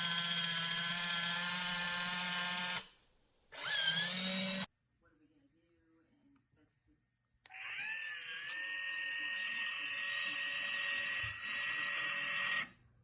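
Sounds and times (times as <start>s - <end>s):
can opener motor whining: 0.0s - 2.8s, 3.6s - 4.7s, 7.5s - 12.8s.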